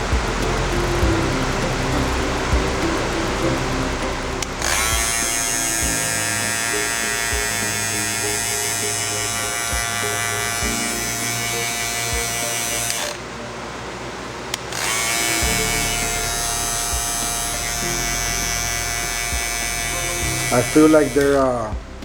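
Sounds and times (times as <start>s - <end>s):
hair trimmer buzzing: 4.6s - 13.2s, 14.7s - 21.3s.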